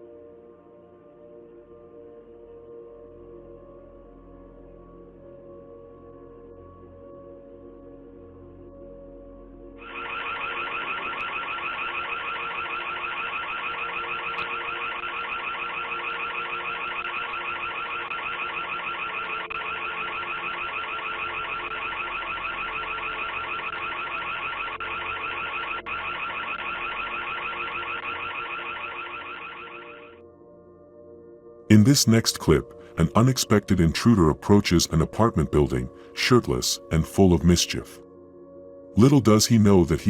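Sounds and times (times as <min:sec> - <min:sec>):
pulsing security alarm siren: 0:09.8 - 0:30.3.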